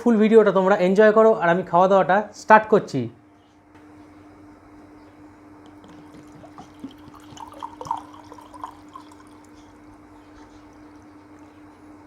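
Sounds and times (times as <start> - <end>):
steady low hum: 0.0 - 12.0
hand mixing wet food: 5.7 - 12.0.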